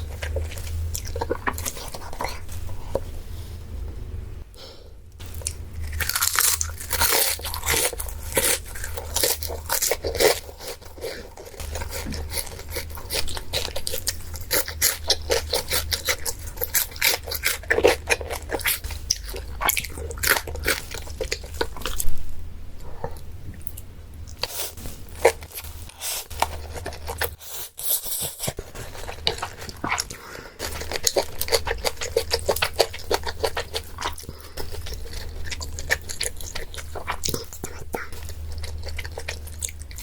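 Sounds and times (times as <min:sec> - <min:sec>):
crunchy chewing: 0:00.0 - 0:03.2, 0:05.2 - 0:40.0
low hum: 0:00.0 - 0:16.7.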